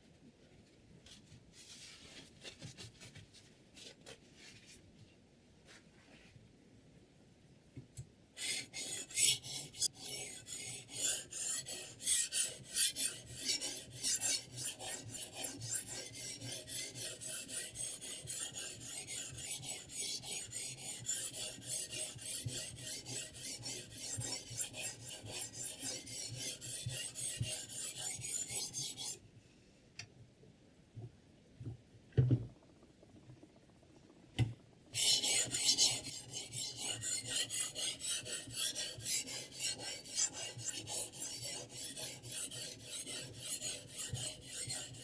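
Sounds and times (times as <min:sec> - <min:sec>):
sharpening stone rasping on knife: 0:08.4 - 0:29.2, 0:35.0 - 0:45.0.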